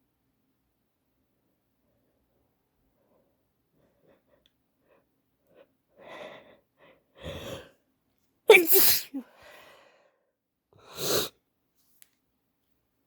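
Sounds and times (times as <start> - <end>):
woman sneezing: 8.5 - 9.3.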